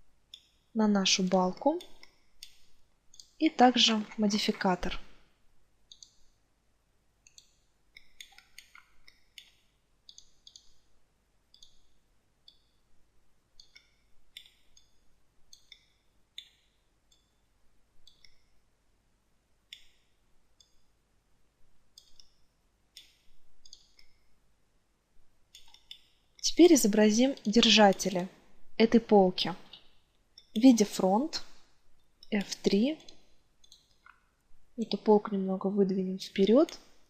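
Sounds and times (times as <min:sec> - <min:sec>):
computer mouse clicks: 0:01.8 - 0:03.4, 0:05.9 - 0:06.4, 0:07.2 - 0:10.9, 0:11.5 - 0:12.8, 0:13.6 - 0:17.4, 0:18.0 - 0:18.5, 0:19.7 - 0:20.9, 0:21.9 - 0:24.2, 0:25.5 - 0:28.3, 0:32.2 - 0:34.2.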